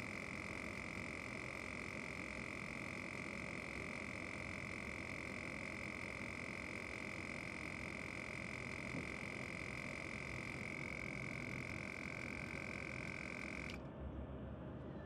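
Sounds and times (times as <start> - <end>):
air compressor whining: 0.0 - 13.8.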